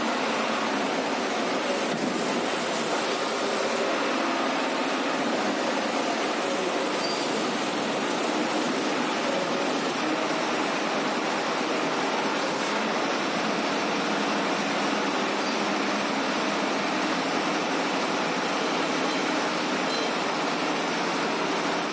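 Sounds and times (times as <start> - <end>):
snowblower rushing noise: 0.0 - 21.9.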